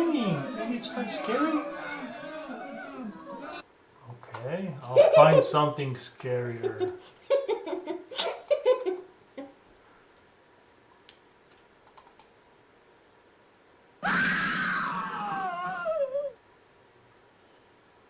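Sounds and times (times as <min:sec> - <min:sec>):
woman screaming: 0:00.0 - 0:03.6, 0:14.0 - 0:16.4
faint clicks: 0:11.0 - 0:12.4.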